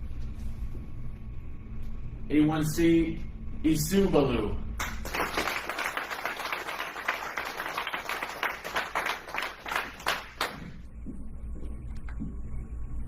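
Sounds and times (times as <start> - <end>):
audience applauding: 4.8 - 10.8.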